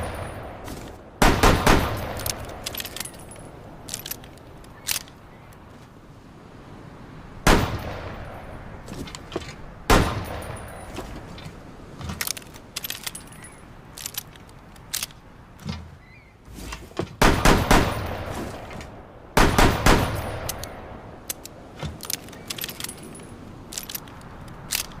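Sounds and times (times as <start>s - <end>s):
revolver action clicks and rattles: 1.6s - 5.2s, 11.4s - 15.8s, 20.0s - 25.0s.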